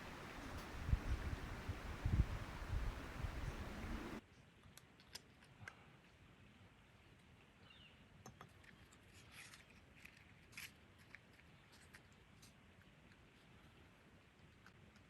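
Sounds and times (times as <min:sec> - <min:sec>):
low hiss: 0:00.0 - 0:04.2.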